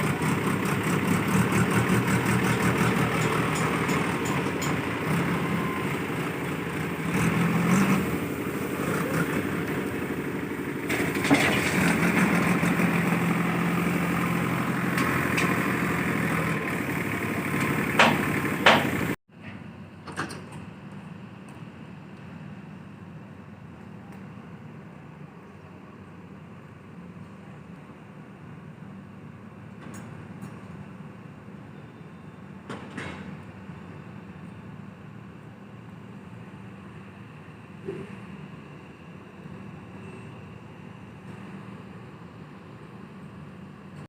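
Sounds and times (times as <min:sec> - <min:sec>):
diesel engine running: 0:00.0 - 0:19.2
sharp knocks: 0:18.0 - 0:19.0.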